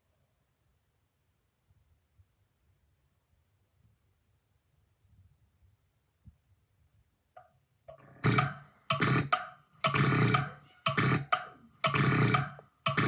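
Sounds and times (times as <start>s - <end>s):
person snoring loudly: 8.2s - 13.0s.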